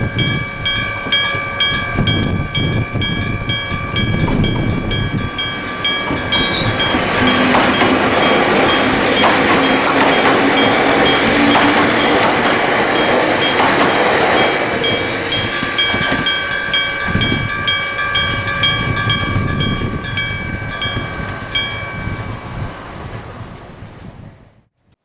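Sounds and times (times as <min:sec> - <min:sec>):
crossing bell clanging: 0:00.0 - 0:23.4
train passing: 0:00.0 - 0:24.6.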